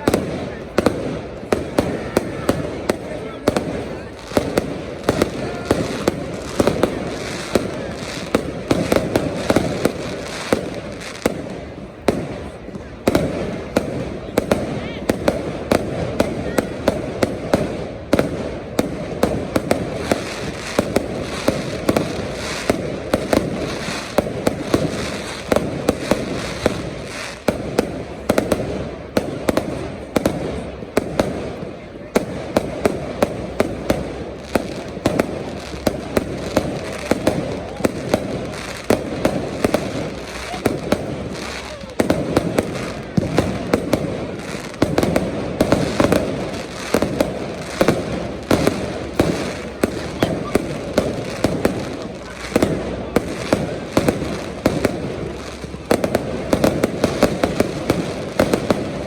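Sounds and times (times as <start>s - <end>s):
fireworks bangs and cracks: 0.0s - 59.0s.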